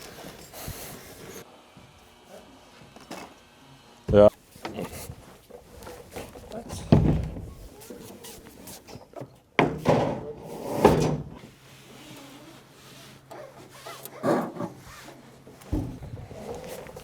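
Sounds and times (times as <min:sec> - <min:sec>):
heavy speaker cabinet scraping: 0:13.6 - 0:17.0
loud bumps: 0:15.7 - 0:17.0.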